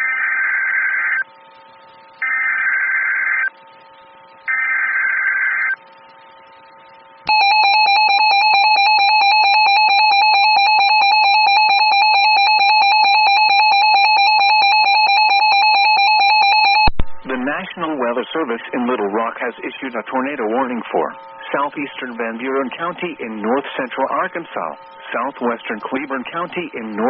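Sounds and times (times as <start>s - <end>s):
screeching digital data bursts: 0.0s - 27.0s
steady warning alarm tone: 0.0s - 27.0s.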